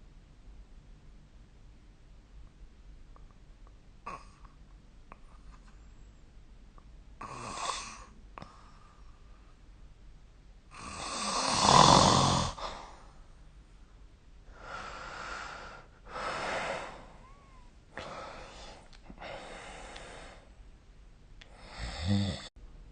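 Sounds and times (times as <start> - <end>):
person snoring: 7.2 - 8.1, 10.7 - 12.9, 21.5 - 22.5
person breathing: 8.4 - 9.6, 12.4 - 13.3, 14.5 - 20.6, 21.5 - 22.4.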